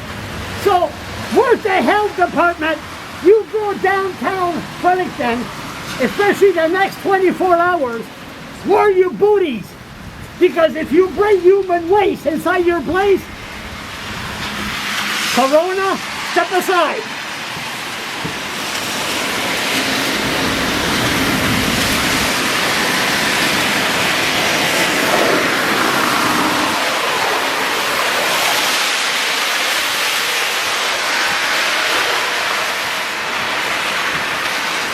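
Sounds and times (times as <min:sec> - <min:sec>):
heavy rain on street: 0:00.0 - 0:34.9.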